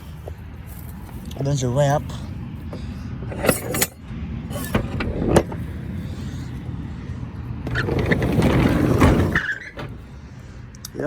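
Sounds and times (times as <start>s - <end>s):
van rear door rolling rattle: 4.5s - 6.0s, 7.5s - 10.3s.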